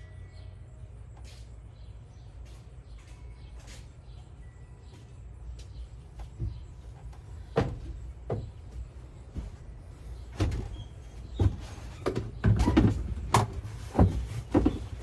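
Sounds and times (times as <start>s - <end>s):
knocks and clunks: 6.3s - 15.0s.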